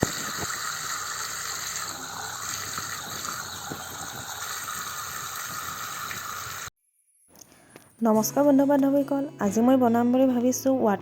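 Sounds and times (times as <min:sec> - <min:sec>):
fountain water splashing: 0:00.0 - 0:06.7.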